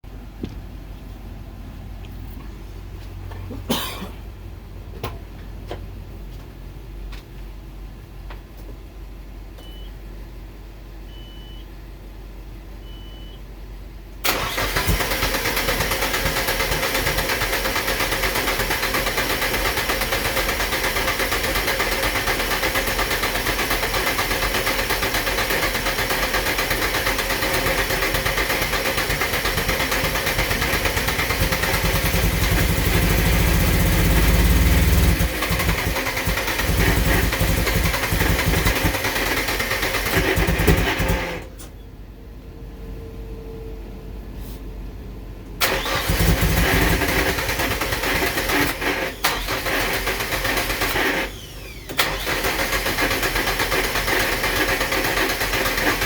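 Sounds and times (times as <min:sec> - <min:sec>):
starter motor cranking engine: 0:14.2 - 0:41.5, 0:45.6 - 0:56.0.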